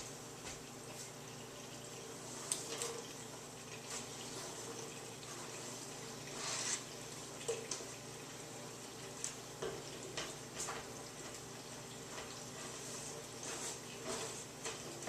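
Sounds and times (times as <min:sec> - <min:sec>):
food sizzling: 0:04.1 - 0:07.4
spoon scraping a pot: 0:06.3 - 0:06.9.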